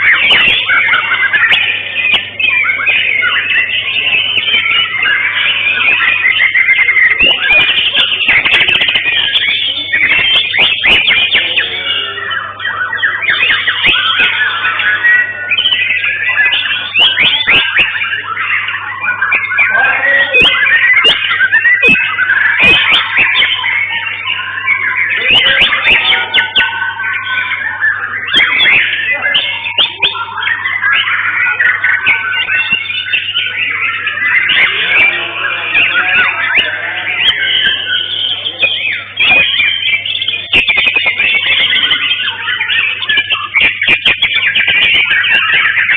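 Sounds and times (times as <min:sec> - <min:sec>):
bird song of fast whistles: 0:00.0 - 0:45.9.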